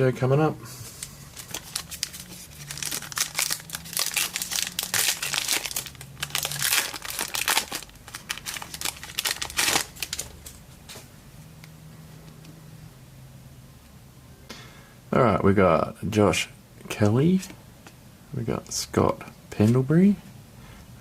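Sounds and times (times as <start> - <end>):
wrapper crinkling and tearing: 1.0 - 10.6.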